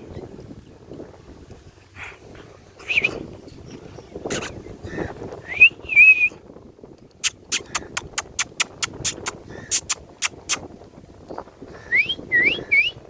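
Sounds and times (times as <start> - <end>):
parrot whistling calls: 7.2 - 10.6, 11.9 - 13.0
sharp clicks: 7.2 - 10.6.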